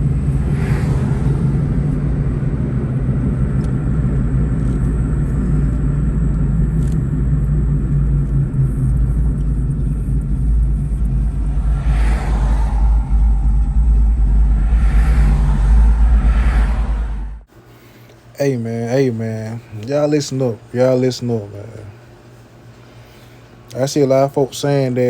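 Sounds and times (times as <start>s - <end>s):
car engine droning: 0.0s - 17.5s
higher-pitched noise swells: 6.5s - 17.5s.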